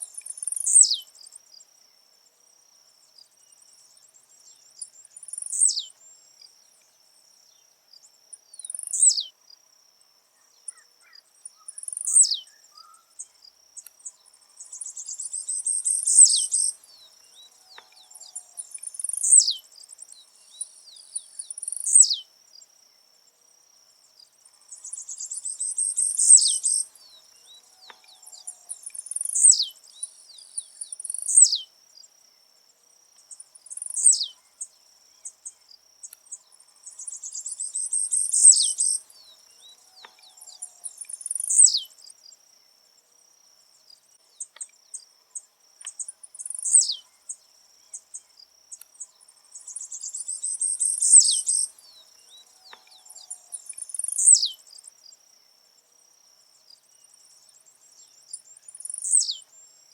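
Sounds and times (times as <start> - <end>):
buzzy bird twitter: 0.0 - 1.1, 4.9 - 6.0, 8.6 - 9.3, 10.7 - 13.4, 14.6 - 19.7, 20.5 - 22.3, 24.7 - 31.7, 33.7 - 34.4, 36.8 - 39.4, 40.0 - 41.9, 45.9 - 47.1, 49.6 - 52.0, 52.6 - 54.6, 58.6 - 59.5
insect trill: 0.0 - 59.9.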